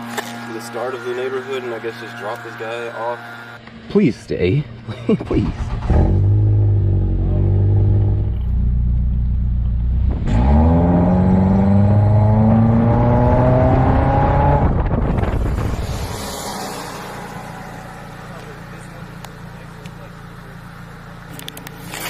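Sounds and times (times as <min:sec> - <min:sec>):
car engine accelerating: 0:04.7 - 0:22.0.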